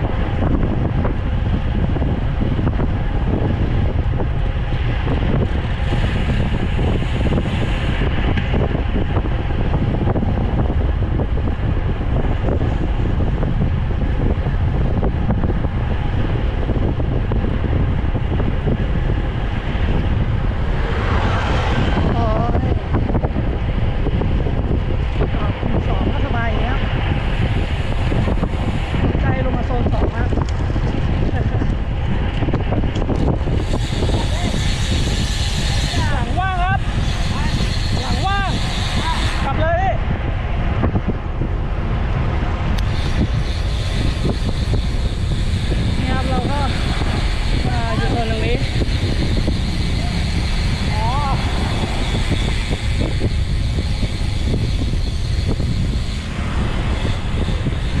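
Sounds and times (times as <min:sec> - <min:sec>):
road noise: 0:00.0 - 0:58.0
wind buffeting microphone: 0:00.0 - 0:58.0.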